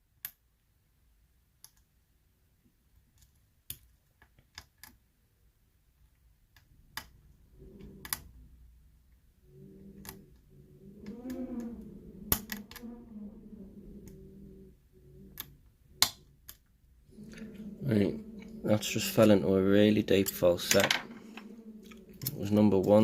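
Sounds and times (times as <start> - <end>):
faint low hum: 5.6 - 23.0.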